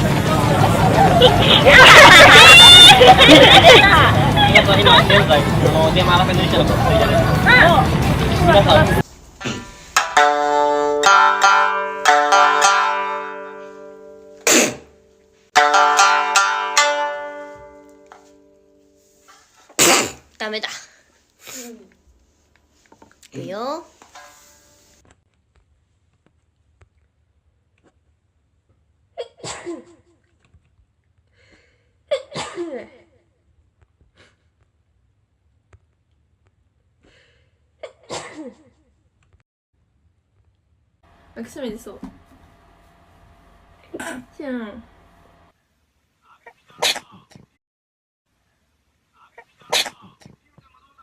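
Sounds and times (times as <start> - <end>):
plucked string instrument melody: 9.8 - 19.1
woman sneezing: 14.4 - 14.9.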